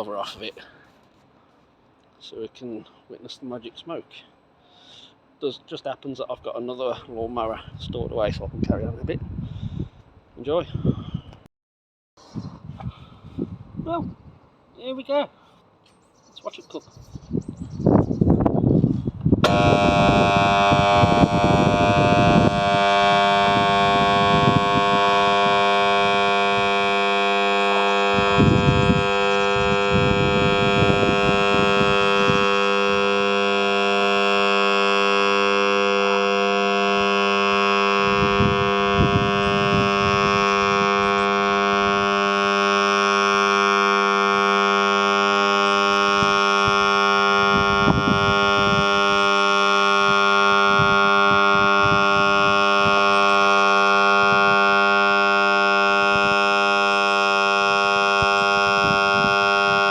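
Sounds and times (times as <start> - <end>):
electric motor buzzing: 19.4 - 59.9.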